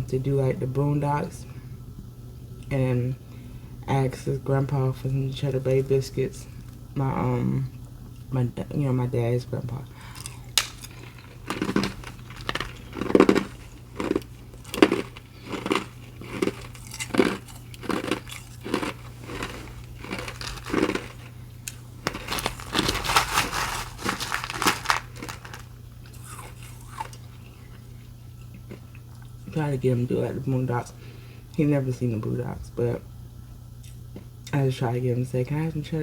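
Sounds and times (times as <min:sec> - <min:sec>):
ice crunched between teeth: 0:10.1 - 0:27.5.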